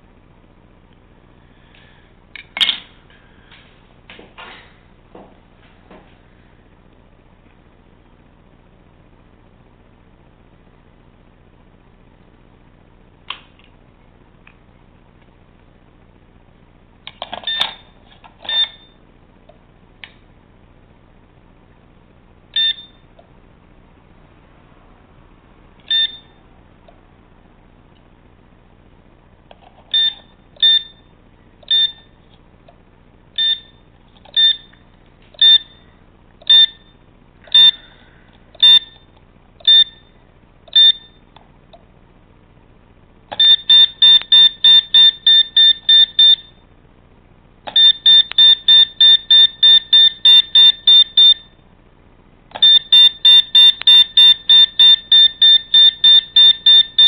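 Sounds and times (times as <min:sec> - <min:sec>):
high electronic buzzer beeps: 0:18.5 - 0:19.0, 0:22.6 - 0:23.0, 0:25.9 - 0:26.4, 0:29.9 - 0:32.2, 0:33.4 - 0:34.8, 0:35.4 - 0:35.8, 0:36.4 - 0:37.9, 0:38.6 - 0:41.2, 0:43.4 - 0:46.6, 0:47.7 - 0:51.6, 0:52.6 - 0:57.0.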